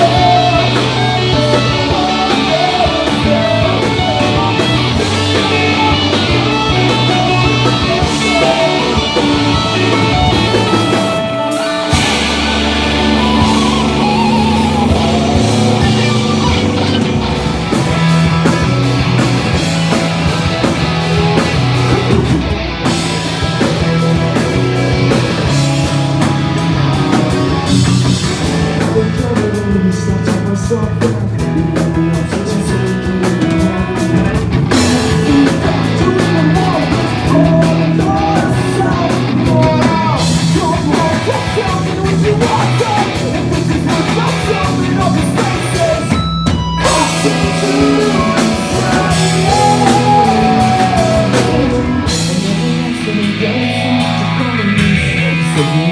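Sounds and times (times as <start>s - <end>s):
person singing: 0.0s - 17.3s, 28.6s - 46.2s, 46.8s - 55.9s
drum kit: 0.0s - 55.9s
electric guitars: 0.0s - 55.9s.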